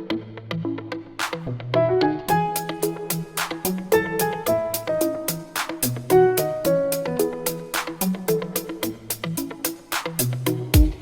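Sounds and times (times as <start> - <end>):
held keyboard notes: 0.0 - 11.0
music with steady beat: 0.0 - 11.0.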